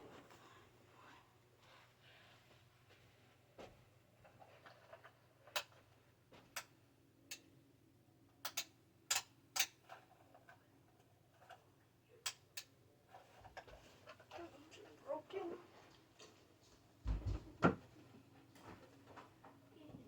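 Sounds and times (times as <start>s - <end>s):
faint low hum: 9.7s - 20.0s.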